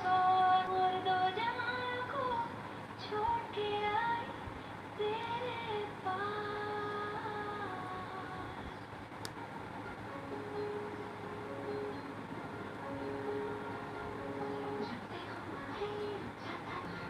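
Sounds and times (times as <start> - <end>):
soft musical accompaniment: 5.0 - 17.0.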